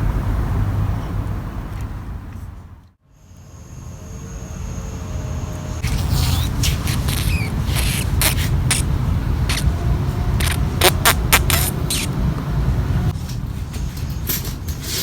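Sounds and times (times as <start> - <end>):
steady low rumble: 0.0 - 14.1
beetle squeaking and chirping: 5.8 - 8.9, 9.5 - 9.7, 10.4 - 12.1.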